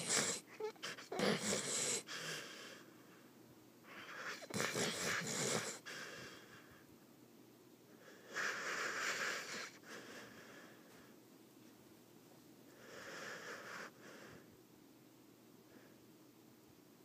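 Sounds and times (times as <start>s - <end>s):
dog snoring: 0.0s - 2.8s, 3.9s - 6.4s, 8.0s - 10.7s, 12.8s - 14.4s.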